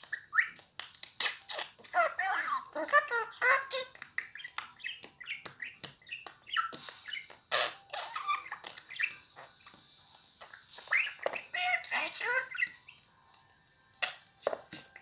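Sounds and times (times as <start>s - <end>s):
budgerigar chattering: 10.8s - 13.0s.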